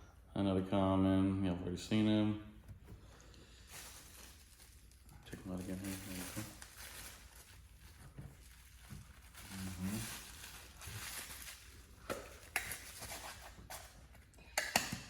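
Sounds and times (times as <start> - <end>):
packaging rustling: 3.5 - 14.0.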